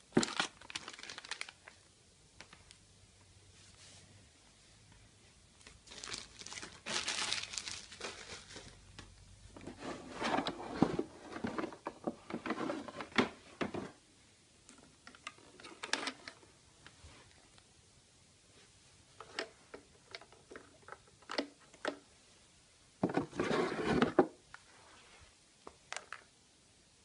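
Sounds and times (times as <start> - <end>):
packaging crinkling: 0.1 - 1.8, 5.6 - 8.9.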